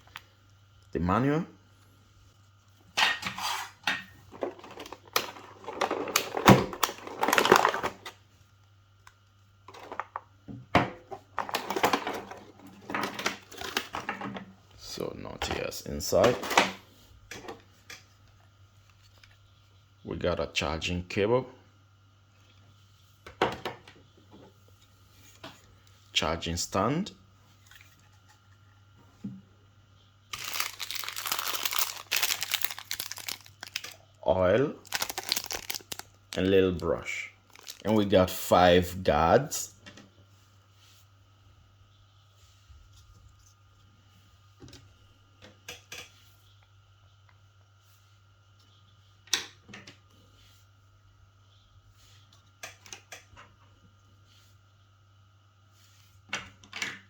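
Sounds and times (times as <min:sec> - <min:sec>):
packaging rustling: 0:04.5 - 0:08.1, 0:30.3 - 0:34.0, 0:34.8 - 0:36.8, 0:37.4 - 0:38.4.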